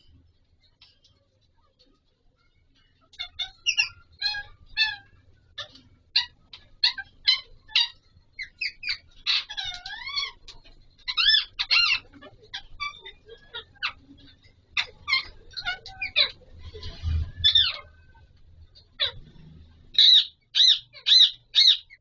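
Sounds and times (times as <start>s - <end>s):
parakeet squawking and chirping: 0.0s - 22.0s
parakeet wavering call: 3.2s - 14.0s, 19.9s - 22.0s.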